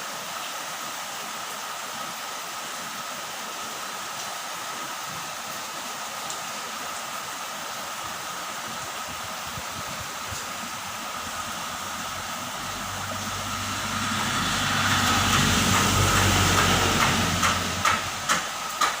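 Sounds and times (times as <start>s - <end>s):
heavy rain falling: 0.0s - 19.0s
vehicle engine rumble: 9.0s - 19.0s
sharp knocks: 15.1s - 19.0s.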